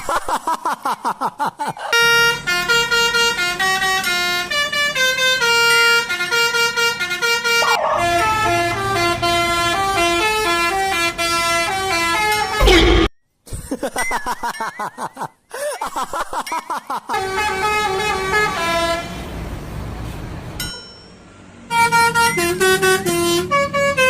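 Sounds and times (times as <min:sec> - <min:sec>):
multi-tone bus horn melody: 0:01.8 - 0:13.1, 0:17.1 - 0:20.3, 0:21.5 - 0:24.0.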